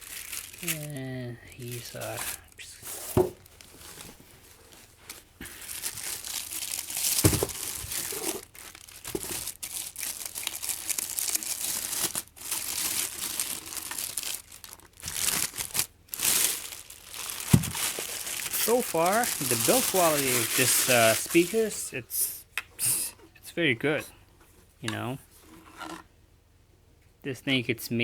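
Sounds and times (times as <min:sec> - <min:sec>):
packaging crinkling and rustling: 0:00.0 - 0:21.8.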